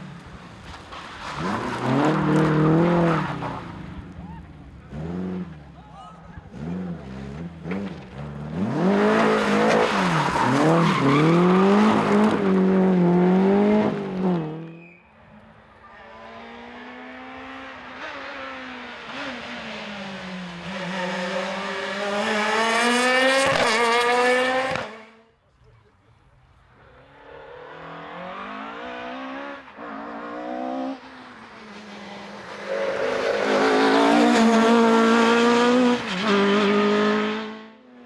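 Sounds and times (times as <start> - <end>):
rally car engine revving: 0.2 - 14.8, 16.0 - 25.2, 27.0 - 38.0
car engine approaching: 26.2 - 37.7.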